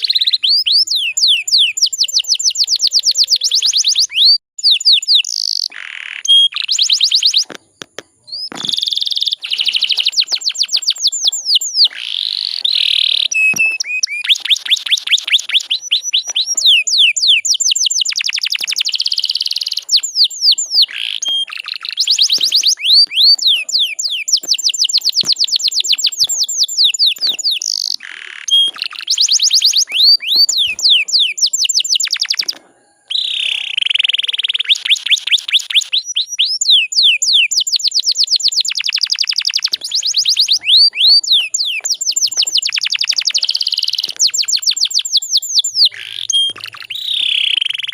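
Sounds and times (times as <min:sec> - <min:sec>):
canary singing trills: 0:00.0 - 0:47.9.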